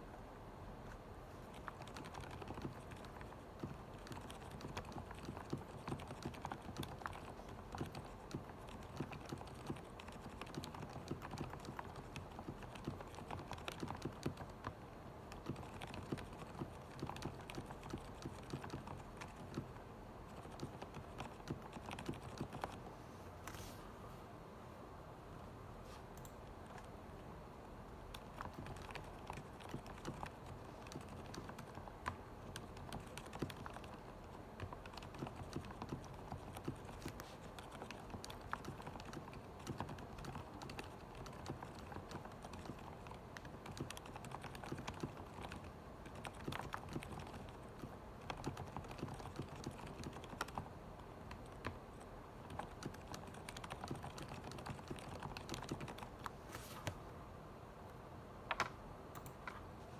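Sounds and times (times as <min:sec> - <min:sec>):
mechanical keyboard typing: 0:01.5 - 0:22.8, 0:28.1 - 0:50.7, 0:51.3 - 0:56.3.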